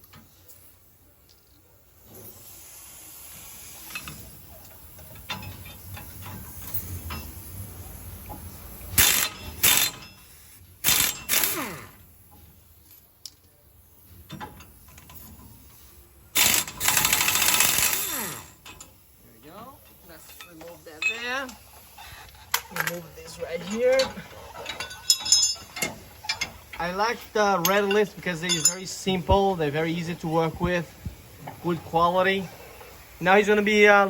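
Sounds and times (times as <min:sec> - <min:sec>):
impact wrench bursts: 0:09.0 - 0:12.1, 0:16.3 - 0:18.8
tools clicking and tapping: 0:27.6 - 0:28.9.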